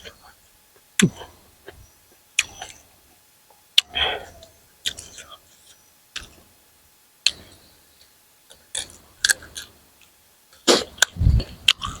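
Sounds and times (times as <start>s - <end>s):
wet chewing smacks: 2.4s - 2.8s.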